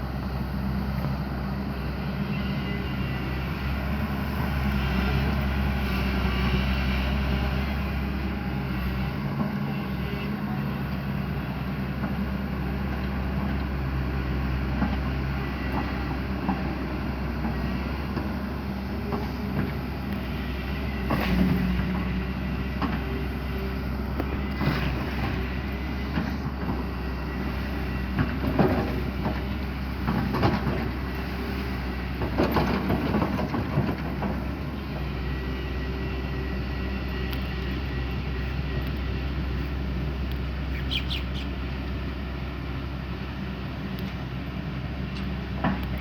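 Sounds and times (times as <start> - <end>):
excavator diesel engine running: 0.0 - 46.0.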